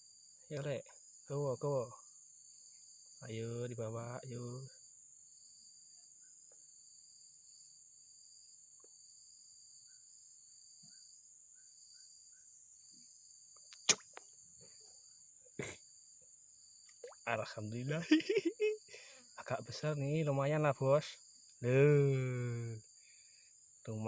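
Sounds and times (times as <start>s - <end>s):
high-pitched insect chirring: 13.6s - 14.4s, 15.0s - 23.0s.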